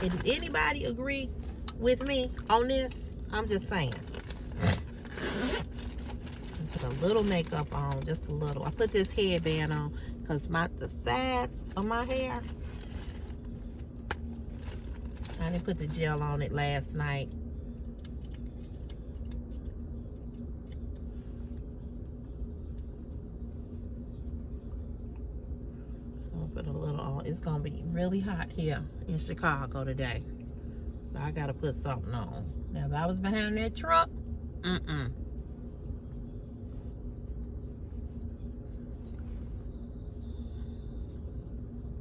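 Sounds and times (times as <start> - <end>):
woman's voice: 0.0 - 4.1, 6.4 - 12.5, 15.3 - 17.3, 26.3 - 30.3, 31.1 - 35.2
faint hum: 0.0 - 42.0
low rumble: 0.0 - 42.0.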